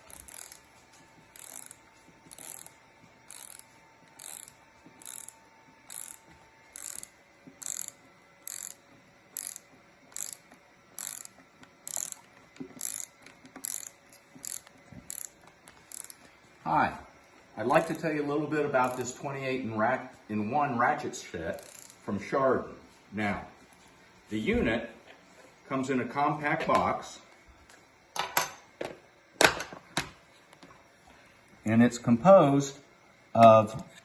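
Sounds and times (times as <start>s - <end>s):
ratchet handle clicking: 0.0s - 16.3s, 18.8s - 19.1s, 21.5s - 22.0s.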